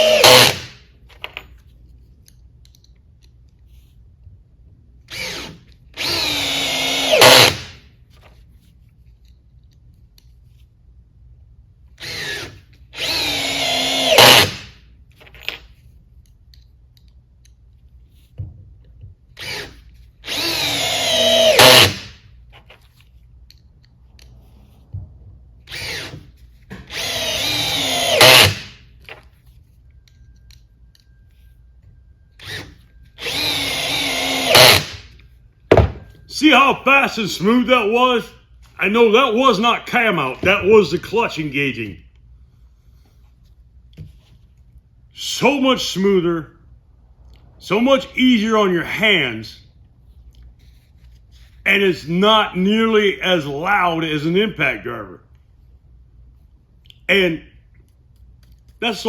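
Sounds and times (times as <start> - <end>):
cordless drill driving screws: 0.0 - 0.8, 5.1 - 7.8, 12.0 - 14.8, 19.4 - 22.2, 25.7 - 28.8, 32.4 - 35.2
drill clutch slipping: 0.0 - 0.8, 5.1 - 7.7, 12.0 - 14.8, 19.4 - 22.2, 25.6 - 28.8, 32.4 - 35.1.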